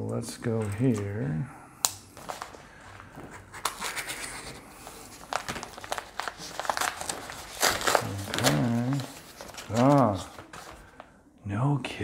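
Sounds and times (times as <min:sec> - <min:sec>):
packaging crinkling and rustling: 0:02.1 - 0:11.1.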